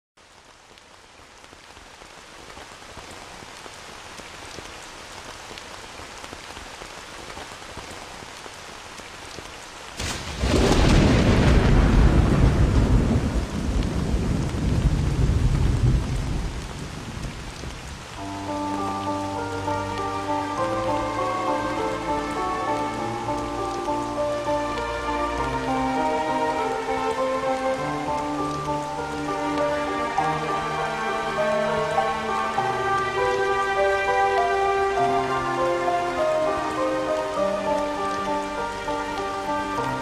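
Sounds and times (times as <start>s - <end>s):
steady rain: 0.2s - 40.0s
thunderclap with low rumble: 10.0s - 18.2s
music: 18.2s - 40.0s.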